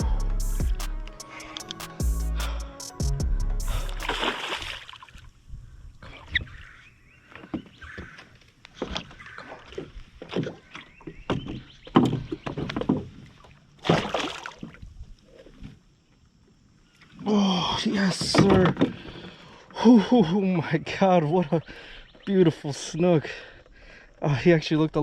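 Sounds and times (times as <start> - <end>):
water splashing: 3.8 - 5.4, 8.7 - 14.8
knocks and rattles in a boat: 7.4 - 13.4, 17.8 - 19.6.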